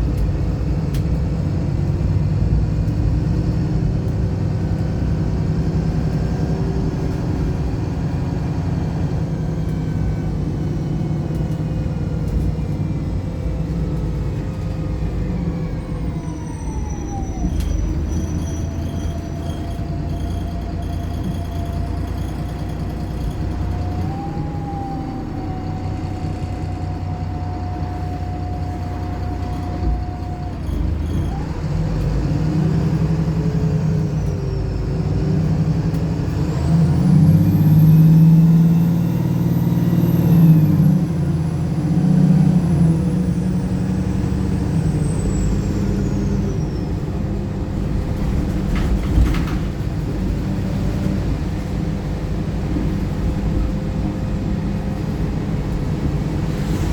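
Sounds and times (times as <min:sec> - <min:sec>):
bus diesel engine under load: 0:00.0 - 0:56.9
high engine whistle: 0:15.6 - 0:22.9.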